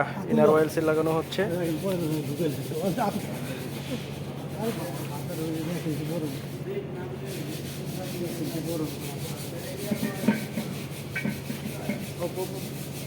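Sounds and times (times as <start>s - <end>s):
rubbing and scraping on metal: 0.8s - 13.0s.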